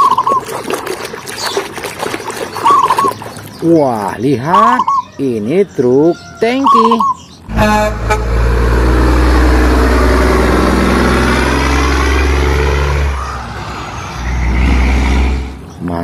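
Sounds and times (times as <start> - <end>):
heavy vehicle engine running: 7.5 - 15.7.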